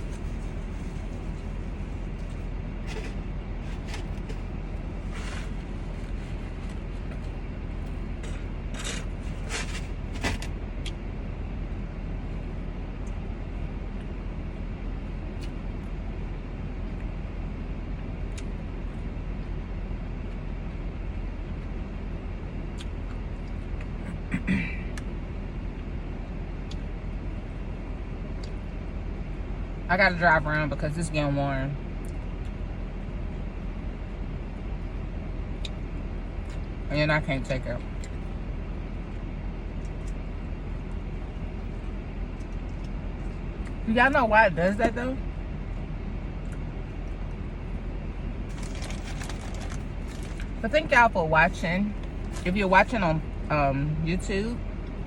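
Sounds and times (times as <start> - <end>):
car engine idling: 33.8 - 55.0.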